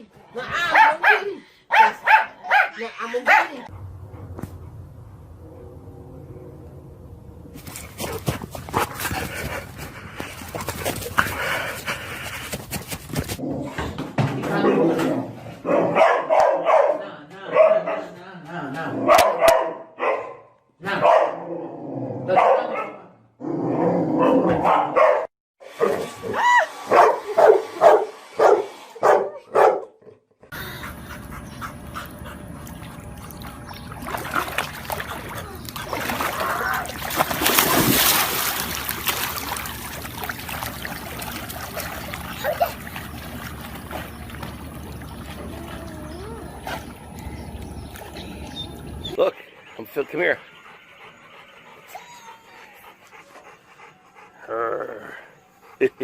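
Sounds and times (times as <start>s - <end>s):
dog barking and yelping: 0.6s - 3.7s, 15.6s - 18.1s, 19.0s - 20.4s, 21.0s - 21.4s, 22.3s - 23.0s, 24.2s - 29.9s.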